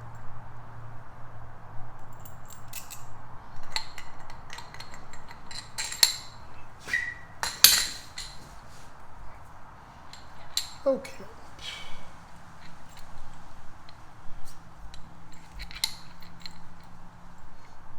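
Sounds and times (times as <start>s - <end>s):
metal hardware clinking: 2.1s - 9.4s, 10.0s - 11.2s, 12.1s - 17.5s.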